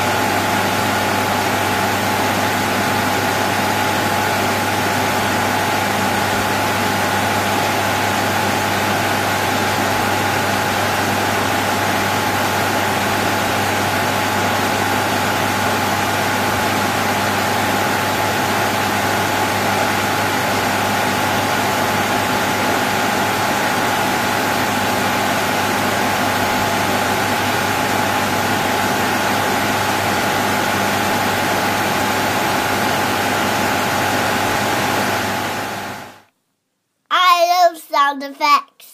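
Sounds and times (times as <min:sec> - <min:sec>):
cooling fans whooshing: 0:00.0 - 0:36.2.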